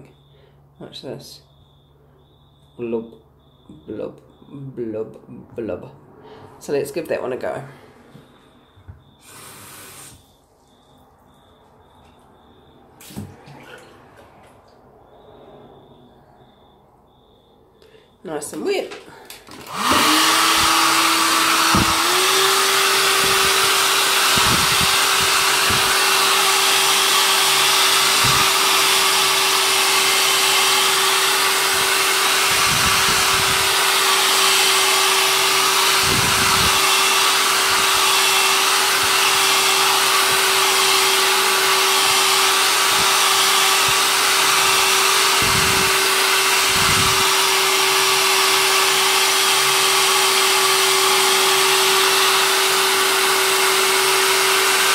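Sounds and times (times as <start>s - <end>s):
hair dryer blowing: 9.2s - 10.2s, 19.4s - 54.9s.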